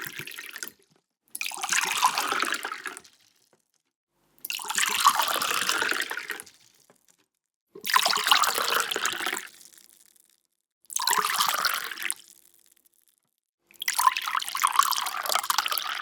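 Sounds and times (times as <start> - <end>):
water pouring into a glass: 0.0 - 0.7, 1.4 - 3.1, 4.5 - 6.5, 7.8 - 9.5, 13.8 - 16.0.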